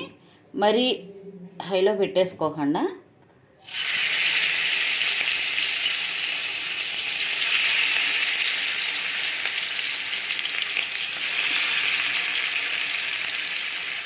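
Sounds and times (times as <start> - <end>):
fish sizzling in hot oil: 3.6 - 14.0.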